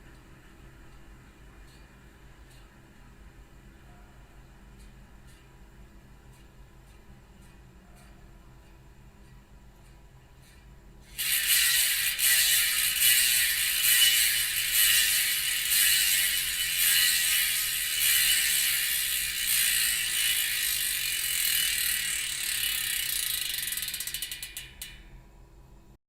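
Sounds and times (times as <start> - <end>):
bicycle hub freewheeling clicks: 4.8 - 5.5, 6.3 - 25.2.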